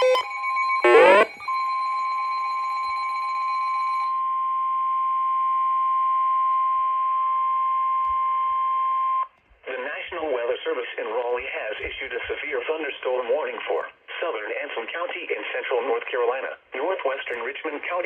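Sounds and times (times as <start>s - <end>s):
steady alarm tone: 0.0s - 4.1s
faint radio hiss: 0.8s - 1.3s.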